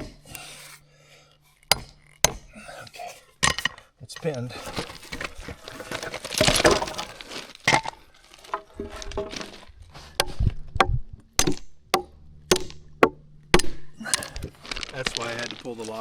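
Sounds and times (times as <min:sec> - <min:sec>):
scraping: 0:00.0 - 0:16.0
hammer hitting nail into wood: 0:01.7 - 0:02.5, 0:10.2 - 0:14.3
wood knock: 0:01.7 - 0:02.5, 0:10.2 - 0:14.3.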